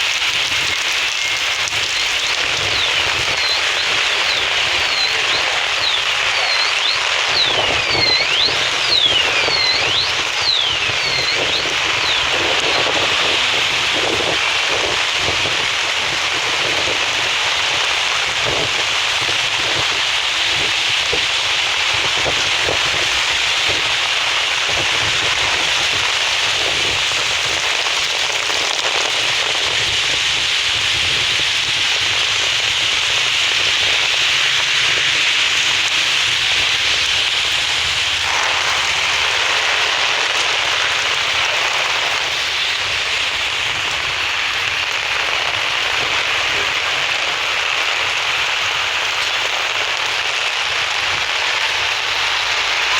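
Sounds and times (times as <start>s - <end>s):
steady rain falling: 0.0s - 52.9s.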